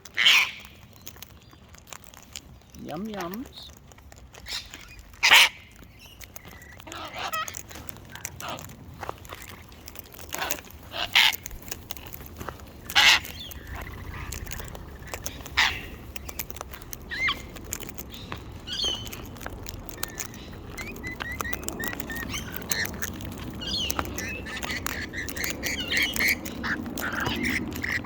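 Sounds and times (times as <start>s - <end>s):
parrots screeching: 0.2s - 0.8s, 4.4s - 5.8s, 6.4s - 28.0s
parrot chirps: 4.4s - 8.6s, 12.8s - 28.0s.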